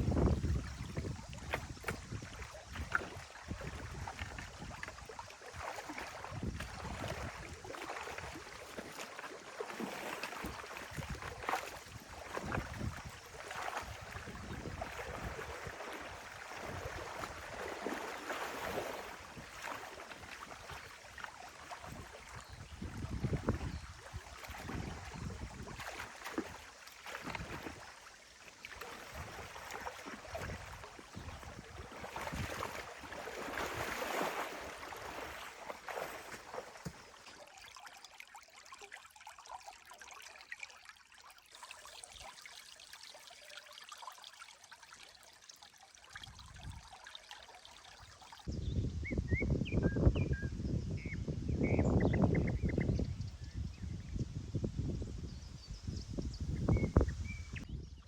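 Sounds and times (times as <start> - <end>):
loud low water rush: 0.0 - 37.2
stream water trickling: 0.0 - 48.6.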